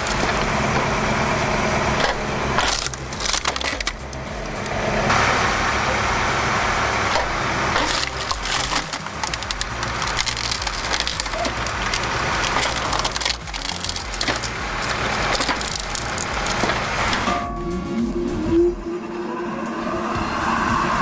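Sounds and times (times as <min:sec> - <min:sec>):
logs cracking and splintering: 0:00.0 - 0:04.3, 0:05.1 - 0:17.3
wood splitter drive hum: 0:00.0 - 0:17.3.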